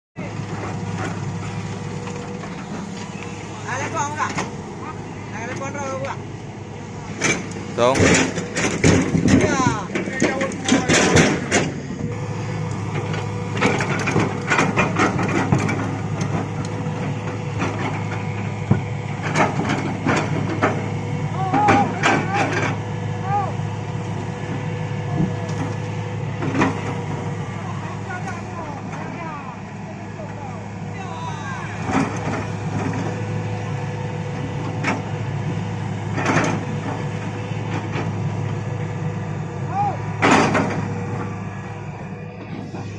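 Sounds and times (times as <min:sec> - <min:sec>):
excavator diesel engine running: 0:00.2 - 0:42.9.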